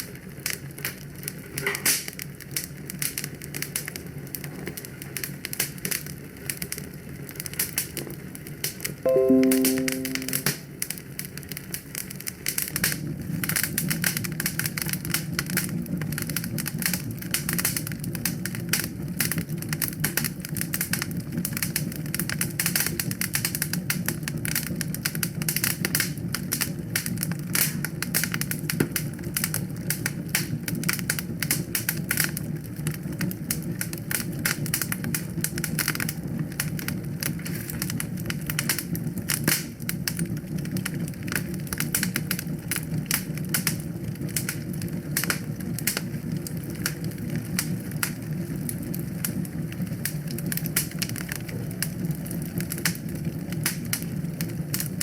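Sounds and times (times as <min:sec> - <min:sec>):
wood fire popping and snapping: 0:00.0 - 0:09.0, 0:11.4 - 0:55.0
low rush of flames: 0:27.2 - 0:55.0.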